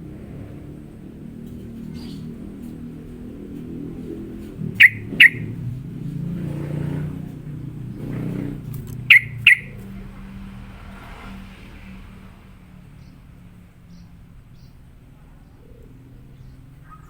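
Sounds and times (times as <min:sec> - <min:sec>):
bird chip calls: 0:04.5 - 0:05.8, 0:08.9 - 0:09.9.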